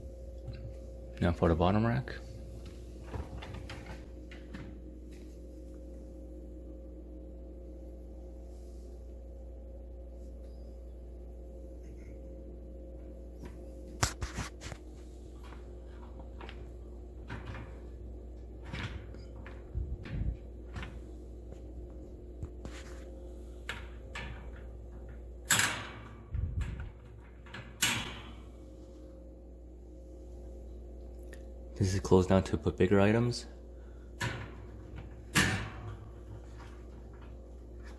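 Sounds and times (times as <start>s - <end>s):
low hum: 0.0s - 27.6s
wire rack clicking and rattling: 23.7s - 28.4s, 34.2s - 37.9s.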